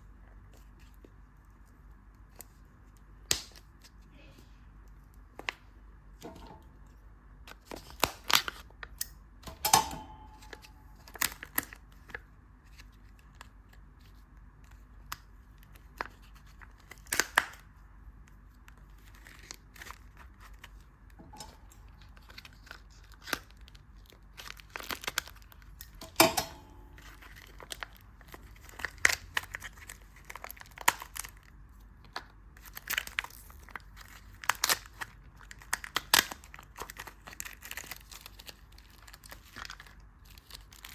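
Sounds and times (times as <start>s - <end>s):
candy wrapper crinkling: 10.3s - 26.1s, 26.8s - 40.9s.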